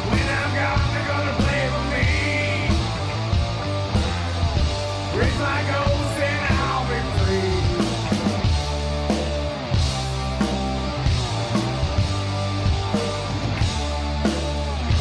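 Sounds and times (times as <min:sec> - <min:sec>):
person singing: 0:00.0 - 0:02.8, 0:05.1 - 0:08.0
drums: 0:00.0 - 0:15.0
guitar: 0:00.0 - 0:15.0.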